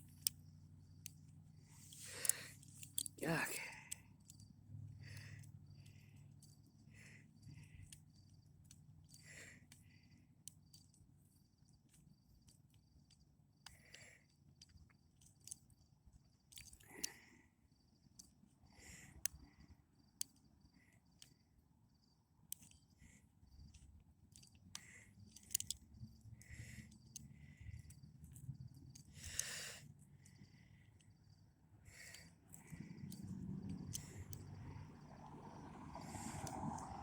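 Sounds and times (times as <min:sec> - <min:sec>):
insect chirping: 0:00.0 - 0:37.0
lock pick clicking and scraping: 0:01.8 - 0:03.2.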